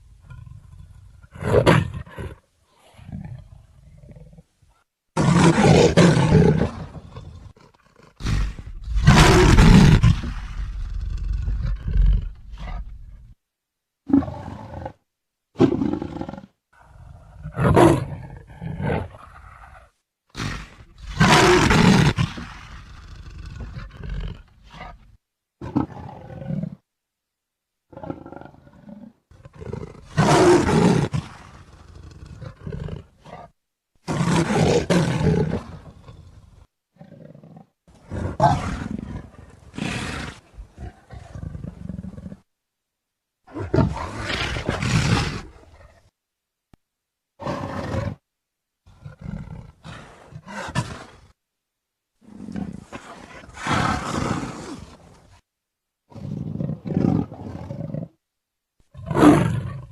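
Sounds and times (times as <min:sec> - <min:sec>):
leopard roaring: 0:05.2 - 0:13.3, 0:15.6 - 0:26.8, 0:27.9 - 0:42.4, 0:43.5 - 0:46.1, 0:47.4 - 0:48.2, 0:48.9 - 0:51.3, 0:52.2 - 0:55.2, 0:56.1 - 0:58.2, 0:58.9 - 0:59.9.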